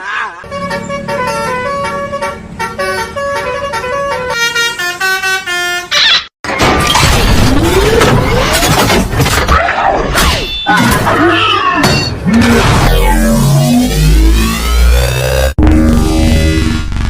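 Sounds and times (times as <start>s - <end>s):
bus horn playing a tune: 0.4s - 6.2s
loud noise with rising whine: 12.7s - 17.0s.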